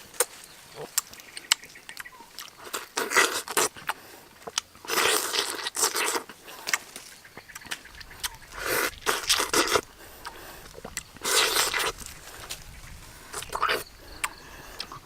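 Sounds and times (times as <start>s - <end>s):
person chewing fruit: 0.0s - 15.0s.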